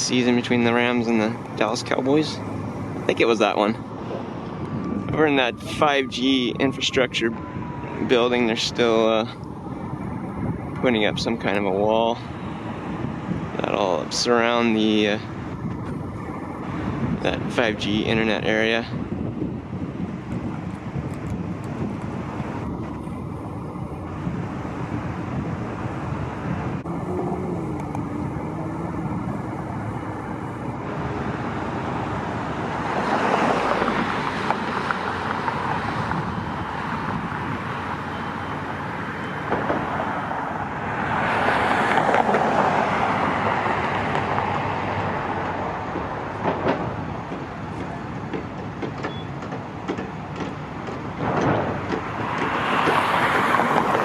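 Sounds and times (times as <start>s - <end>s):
street traffic: 0.0s - 54.0s
vehicles passing close by: 0.0s - 54.0s.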